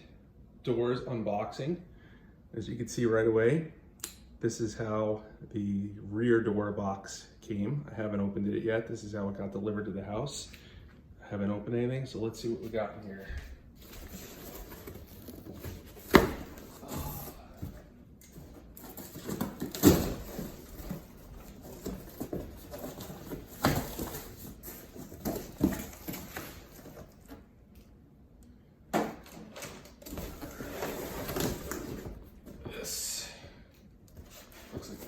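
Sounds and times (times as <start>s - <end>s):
packaging rustling and scraping: 13.8s - 27.4s, 29.2s - 32.6s, 34.2s - 35.0s
box knocks and thumps: 15.5s - 17.8s.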